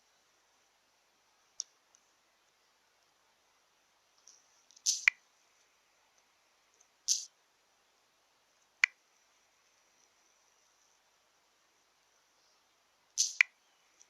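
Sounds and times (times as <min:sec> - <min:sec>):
sharp click: 0:13.2 - 0:13.6.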